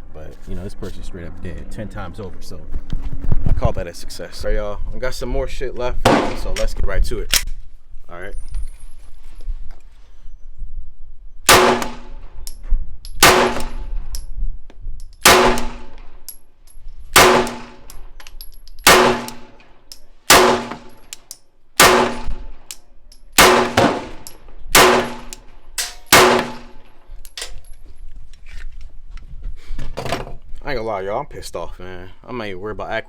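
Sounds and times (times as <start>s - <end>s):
pistol shots: 11.5s - 12.2s, 13.2s - 13.9s, 15.2s - 16.1s, 17.1s - 17.9s, 18.8s - 19.6s, 20.3s - 21.1s, 21.8s - 22.6s, 23.4s - 26.8s.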